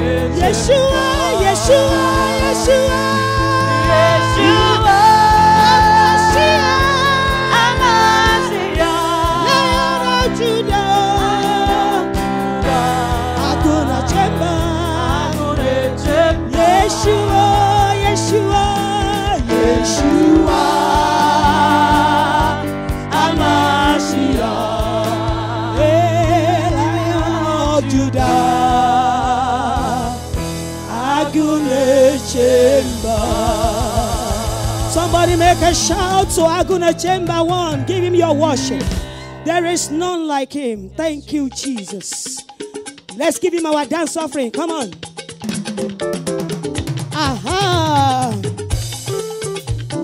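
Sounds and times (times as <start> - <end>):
gospel voices singing: 0.0 - 39.9
instrumental backing with beat: 0.0 - 40.2, 40.9 - 50.0.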